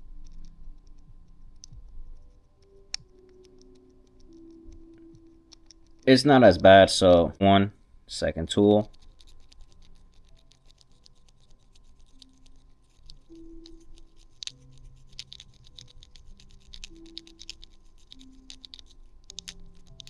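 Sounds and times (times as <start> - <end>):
soft background music: 0.0 - 20.0
pick scratching in charging port: 8.9 - 20.0.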